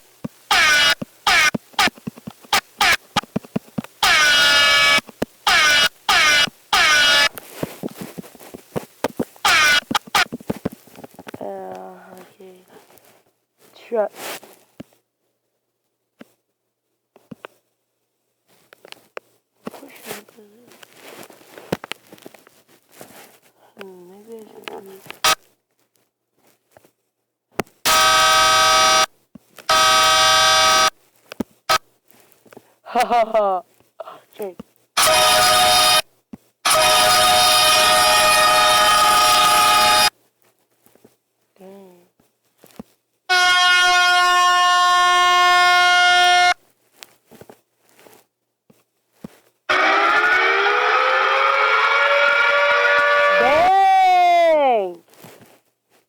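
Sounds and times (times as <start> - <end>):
air horn honks: 0.0 - 1.9, 4.0 - 7.4, 9.4 - 10.2, 27.9 - 29.1, 29.7 - 30.9, 35.0 - 36.0, 36.7 - 40.1, 43.3 - 46.6, 49.7 - 53.7.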